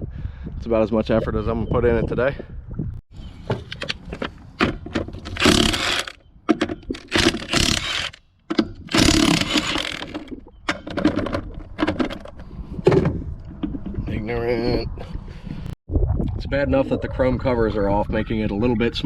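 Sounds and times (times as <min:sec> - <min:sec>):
impact wrench bursts: 0:05.3 - 0:06.2, 0:07.0 - 0:08.2, 0:08.9 - 0:10.2.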